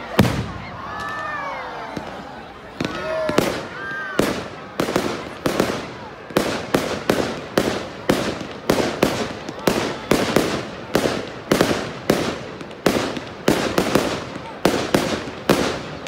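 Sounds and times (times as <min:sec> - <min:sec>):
fireworks bangs: 0:00.0 - 0:16.0.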